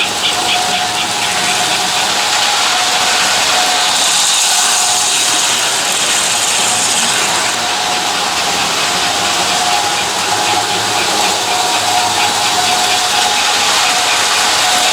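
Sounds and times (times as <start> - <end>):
bright hiss: 0.0 - 14.9
model train motor whine: 0.0 - 14.9
wheels rattling on rails: 0.0 - 14.9.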